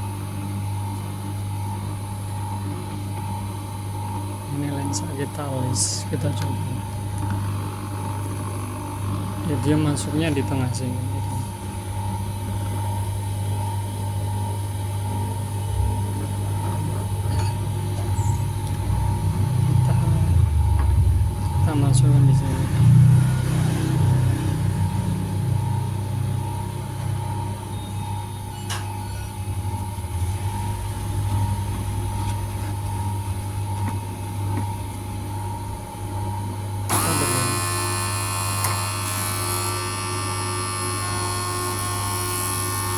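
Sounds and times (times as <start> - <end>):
machine humming: 3.4 - 28.6, 29.3 - 42.9
high-pitched motor whine: 15.1 - 32.6, 36.8 - 42.9
small electric motor humming: 36.9 - 42.9
thin whine: 36.9 - 42.9.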